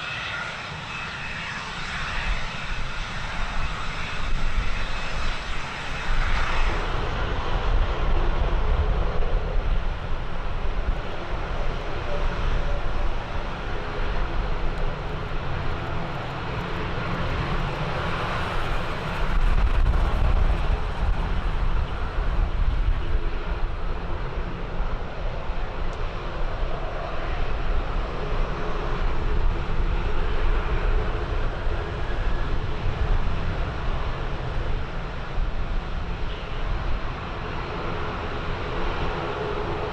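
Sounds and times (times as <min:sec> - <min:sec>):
aircraft engine running: 0:00.0 - 0:39.9
wind buffeting microphone: 0:00.0 - 0:39.9.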